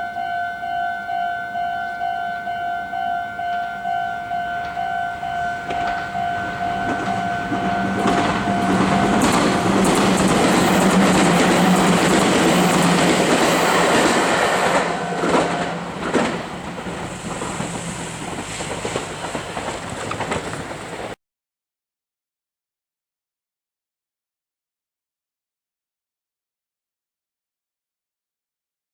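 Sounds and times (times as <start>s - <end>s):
crossing warning bell ringing: 0.0s - 21.2s
electric train passing: 0.0s - 21.2s
wheel clacks over rail joints: 4.6s - 21.2s.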